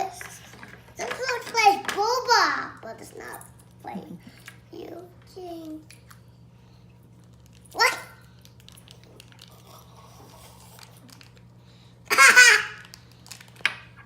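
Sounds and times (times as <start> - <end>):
child laughing: 12.1 - 12.8.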